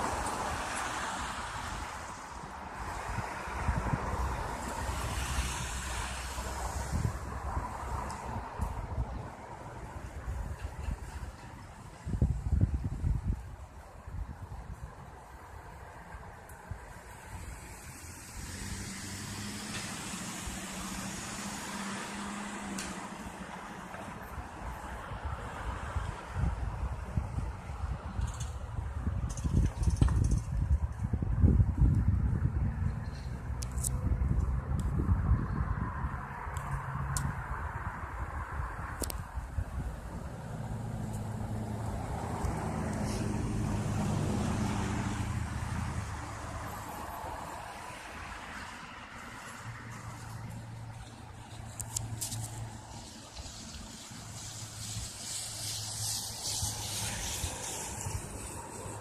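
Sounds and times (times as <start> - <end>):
vehicle passing by: 0.0 - 11.4, 17.1 - 59.0
vehicle engine passing: 17.5 - 24.2, 39.7 - 59.0.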